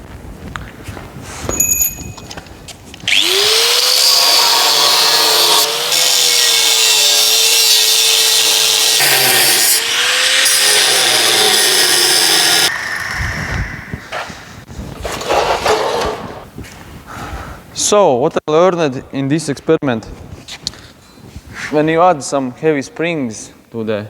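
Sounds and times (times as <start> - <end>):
electric motor whining: 3.1 - 14.2
harsh grinding scraping noise: 3.1 - 16.5.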